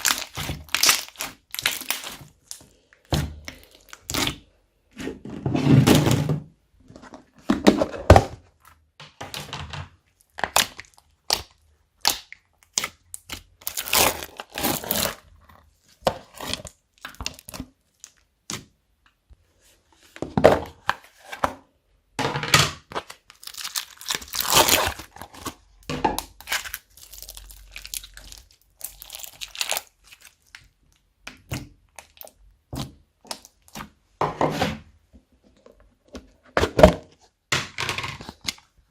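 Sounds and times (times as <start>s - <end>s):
slime squishing and crackling: 0.0s - 4.6s, 10.2s - 18.7s, 22.8s - 34.0s.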